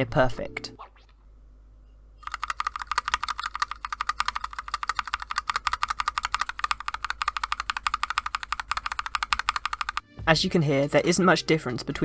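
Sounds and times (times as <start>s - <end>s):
keyboard switch clicking: 2.3s - 10.1s.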